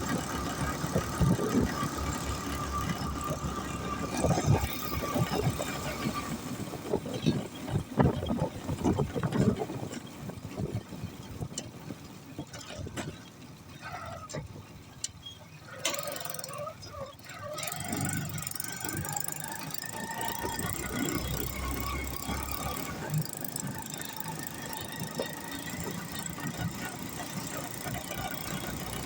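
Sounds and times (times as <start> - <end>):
rickshaw engine running: 0.0 - 29.0.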